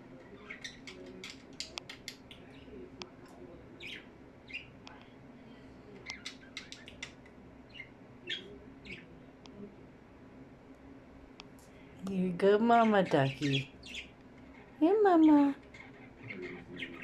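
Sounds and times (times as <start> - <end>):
budgerigars chirping: 12.8 - 14.1, 15.7 - 17.0.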